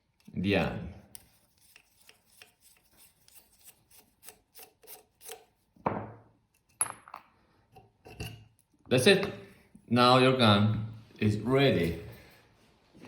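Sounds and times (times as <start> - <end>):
knock: 5.9 - 6.2.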